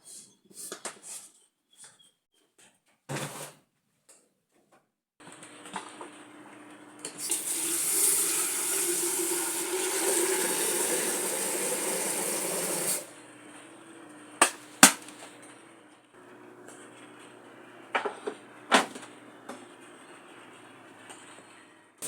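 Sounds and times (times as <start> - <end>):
water running: 7.2 - 13.1.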